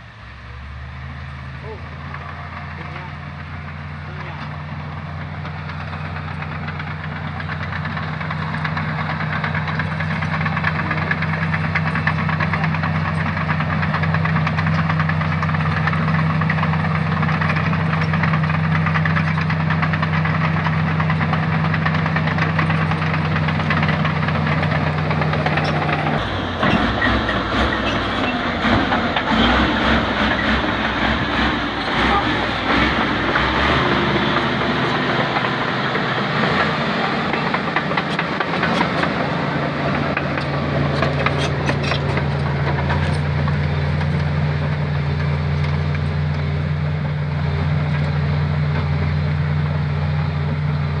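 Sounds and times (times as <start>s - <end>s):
bulldozer diesel engine running: 0.0s - 51.0s.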